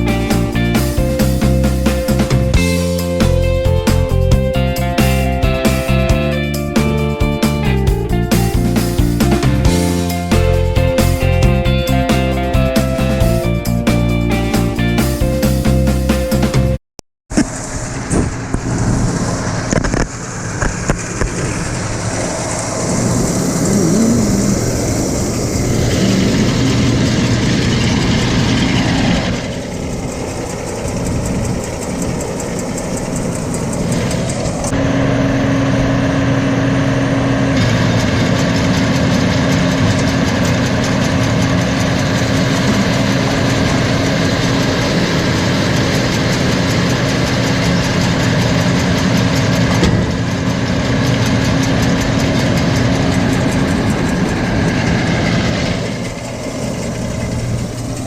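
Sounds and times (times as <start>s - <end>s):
tractor engine running: 0.0s - 58.0s.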